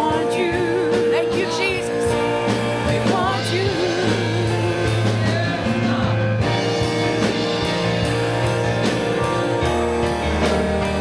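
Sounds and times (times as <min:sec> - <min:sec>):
person singing: 0:00.0 - 0:07.4
live band playing: 0:00.0 - 0:11.0
drum hits: 0:02.2 - 0:11.0.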